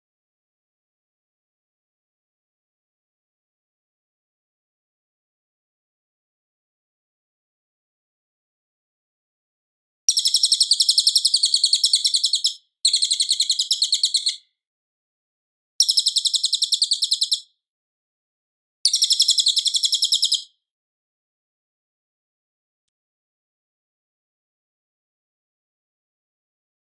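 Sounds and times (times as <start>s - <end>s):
fast high trilled bird chirps: 10.1s - 14.5s, 15.8s - 17.5s, 18.9s - 20.5s.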